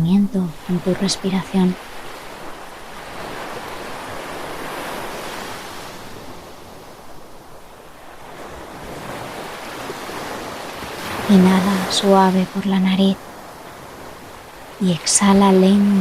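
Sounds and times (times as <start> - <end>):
ocean waves washing on shore: 0.0 - 16.0.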